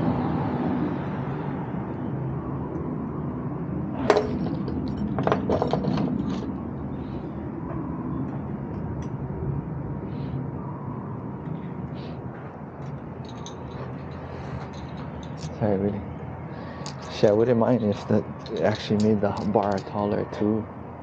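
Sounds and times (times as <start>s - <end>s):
outdoor background rumble: 0.0s - 21.0s
clicks of parts and tools handled: 12.8s - 15.6s, 16.8s - 17.3s, 18.4s - 20.0s.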